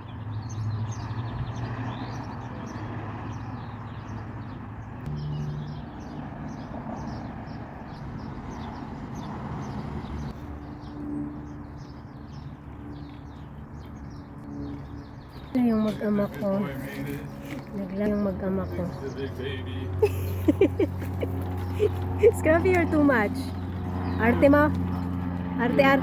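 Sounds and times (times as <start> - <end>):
birds chirping: 0.0 - 26.0
boat engine humming: 15.5 - 26.0.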